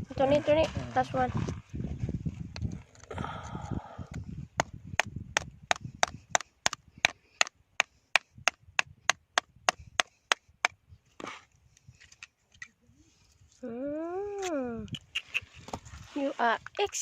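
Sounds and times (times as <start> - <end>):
tool knocking on rock: 4.6 - 10.8.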